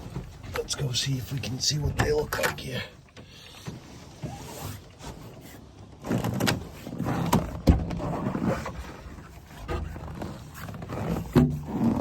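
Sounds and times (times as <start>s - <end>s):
gear scraping and rustling: 3.5s - 12.0s.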